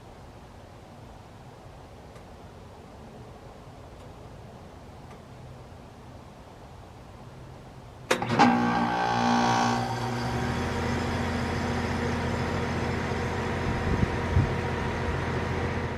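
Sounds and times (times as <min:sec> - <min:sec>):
heat pump click: 0:08.1 - 0:11.0
heat pump running hum: 0:08.1 - 0:15.9
loud rush of refrigerant: 0:08.1 - 0:15.9.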